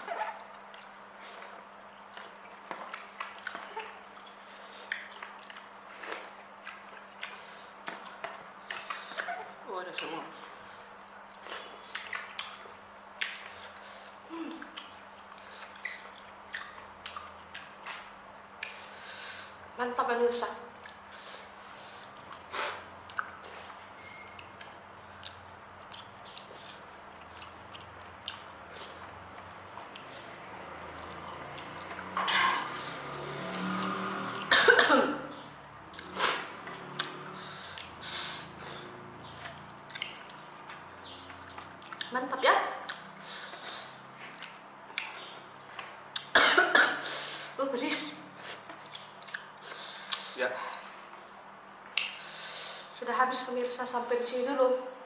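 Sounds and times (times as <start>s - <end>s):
person chewing food: 0.0s - 19.5s, 20.8s - 34.5s, 35.8s - 42.1s, 42.8s - 46.3s, 48.4s - 52.6s.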